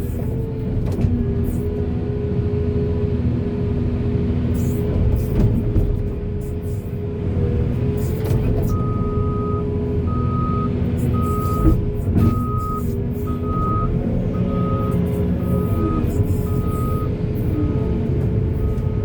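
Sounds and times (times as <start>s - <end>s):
diesel engine running: 0.0s - 19.0s
reversing alarm beeping: 8.7s - 19.0s.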